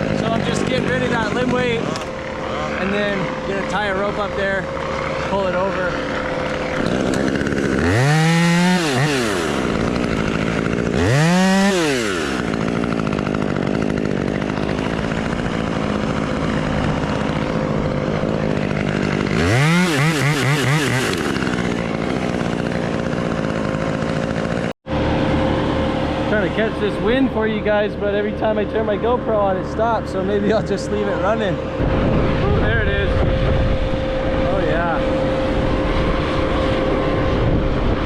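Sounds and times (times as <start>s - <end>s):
chainsaw idling and revving: 0.0s - 38.0s.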